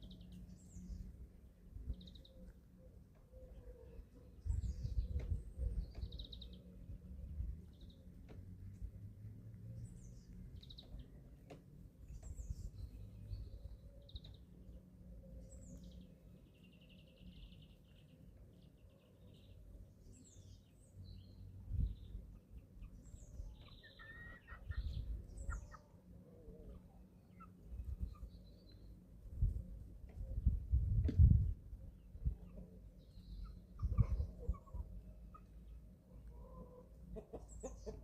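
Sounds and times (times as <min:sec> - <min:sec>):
chicks peeping: 0:22.1 - 0:25.9, 0:32.1 - 0:38.0.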